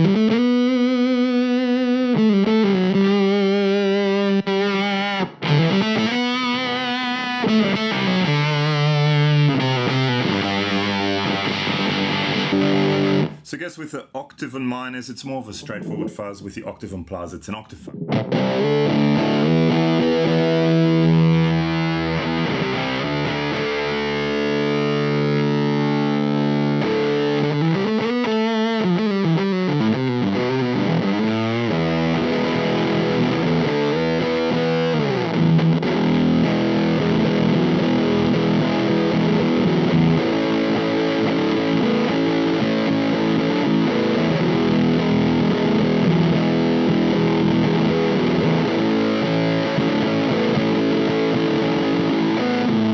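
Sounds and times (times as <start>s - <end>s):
fuzz electric guitar: 0.0s - 13.4s, 17.9s - 52.9s.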